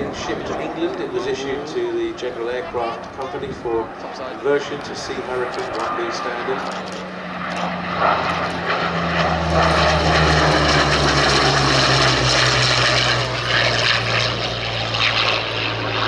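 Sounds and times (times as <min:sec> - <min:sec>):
propeller aircraft engine drone: 0:00.0 - 0:16.0.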